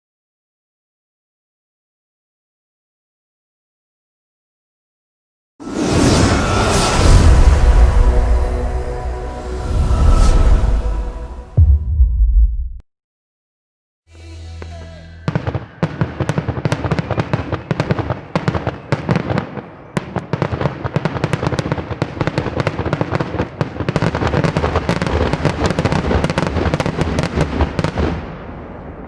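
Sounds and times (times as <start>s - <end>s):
fireworks cracking and banging: 15.3s - 29.0s.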